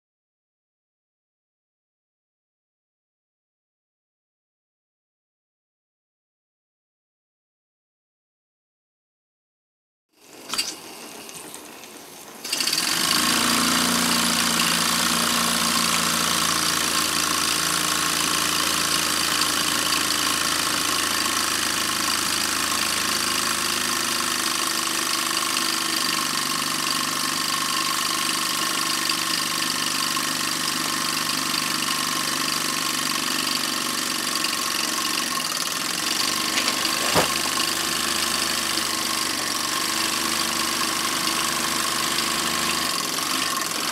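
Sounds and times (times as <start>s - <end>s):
model engine whirring: 10.2s - 43.9s.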